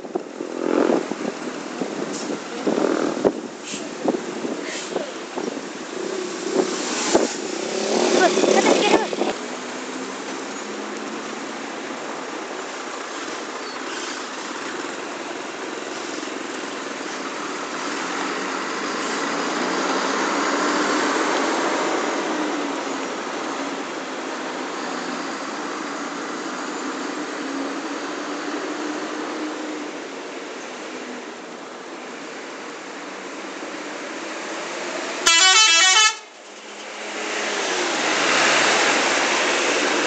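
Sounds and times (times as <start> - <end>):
vehicle engines running: 0.0 - 32.1
vehicle passing: 3.9 - 10.2.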